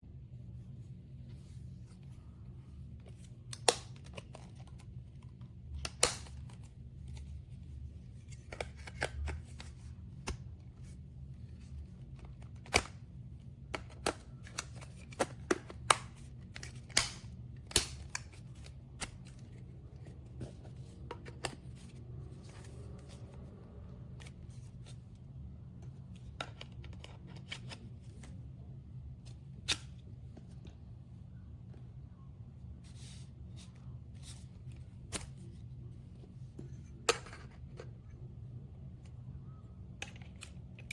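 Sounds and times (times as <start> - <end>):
low steady hum: 0.0 - 40.9.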